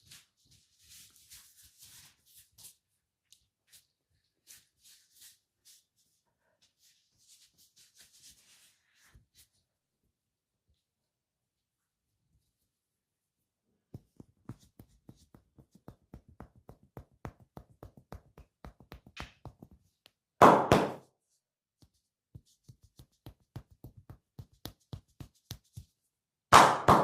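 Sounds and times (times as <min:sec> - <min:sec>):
hands tapping on skin: 0:13.9 - 0:20.9, 0:21.8 - 0:26.0
hands smacking: 0:13.9 - 0:21.0, 0:22.6 - 0:25.9.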